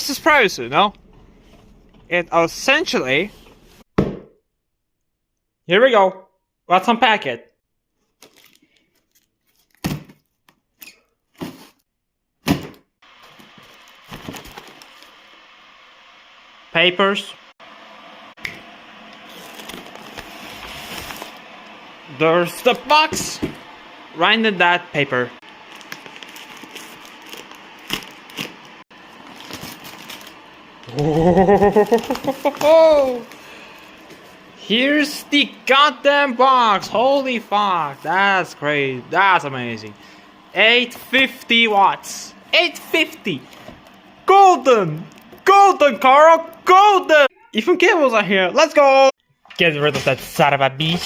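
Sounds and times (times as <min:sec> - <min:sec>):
packing paper rustling: 0:08.0 - 0:10.5, 0:13.2 - 0:15.2, 0:19.2 - 0:21.4, 0:25.4 - 0:30.5, 0:31.6 - 0:34.4.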